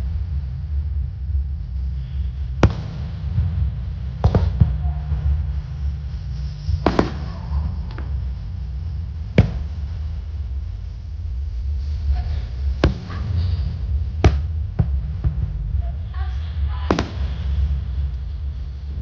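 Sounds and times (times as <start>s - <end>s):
steady low rumble: 0.0s - 19.0s
fireworks bursting: 6.8s - 8.2s, 16.9s - 17.8s.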